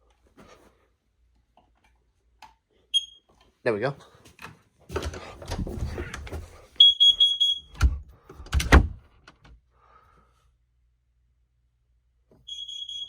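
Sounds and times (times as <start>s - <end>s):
smoke alarm beep: 2.9s - 3.3s, 6.8s - 7.8s, 12.5s - 13.0s.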